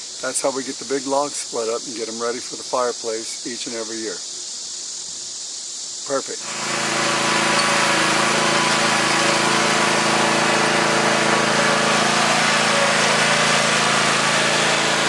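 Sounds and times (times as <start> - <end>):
small gasoline engine running: 6.4 - 15.0.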